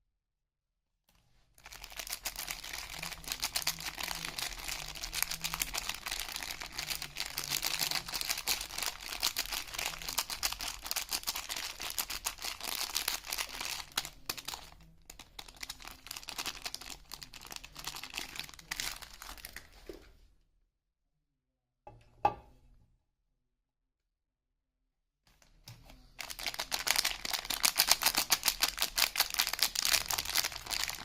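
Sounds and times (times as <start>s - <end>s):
wrapping crinkling and tearing: 1.6s - 19.8s, 25.4s - 31.0s.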